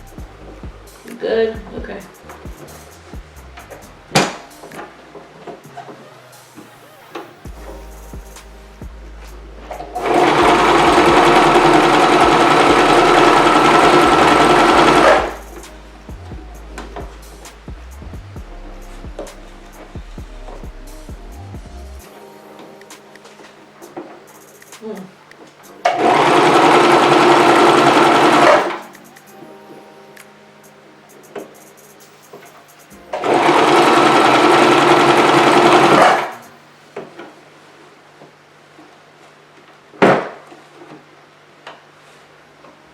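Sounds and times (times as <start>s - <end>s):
sewing machine stitching: 10.0s - 15.4s, 25.9s - 28.9s, 33.2s - 36.4s.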